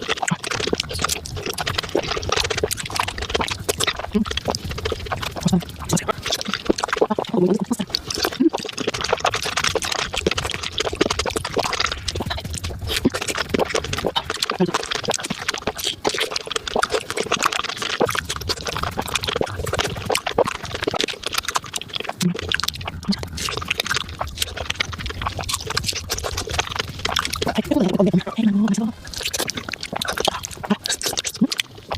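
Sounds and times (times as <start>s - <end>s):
sped-up fruit chewing clicks: 0.0s - 31.9s.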